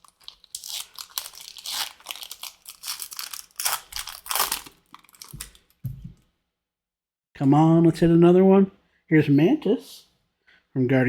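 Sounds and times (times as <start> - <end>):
wrapper tearing and crinkling: 0.0 - 5.8.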